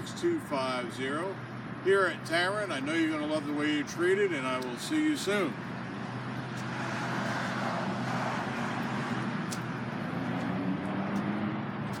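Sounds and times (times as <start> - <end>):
vehicle going by: 5.3 - 12.0.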